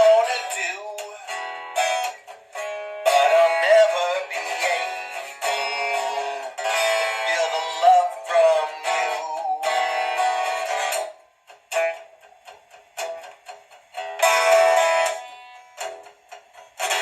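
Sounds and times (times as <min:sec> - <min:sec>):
strummed guitar chords: 0:00.0 - 0:17.0.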